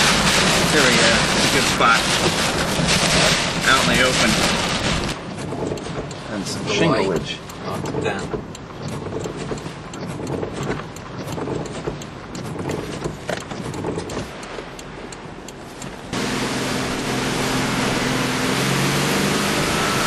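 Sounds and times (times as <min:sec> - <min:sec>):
sharp ticks: 0:00.0 - 0:16.2
rain: 0:00.0 - 0:20.0.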